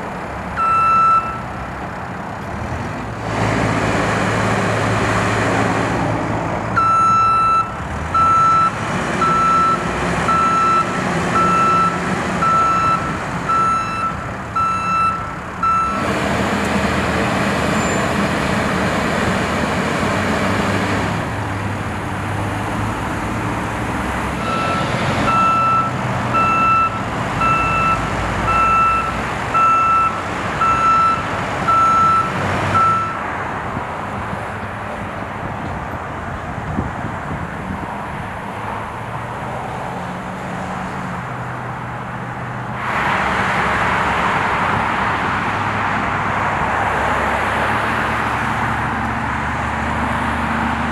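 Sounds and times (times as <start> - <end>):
reversing alarm beeping: 0.6 - 1.5, 6.8 - 16.0, 24.4 - 33.2.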